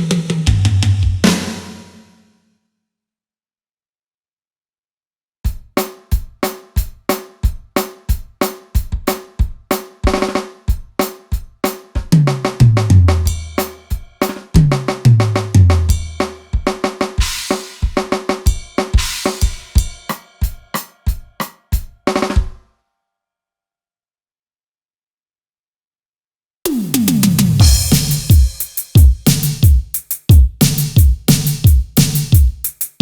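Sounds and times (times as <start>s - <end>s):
electronic drum beat: 0.0s - 2.0s, 5.5s - 22.3s, 26.7s - 33.0s
cymbal crash: 26.7s - 28.8s
low tom hits: 27.6s - 28.6s.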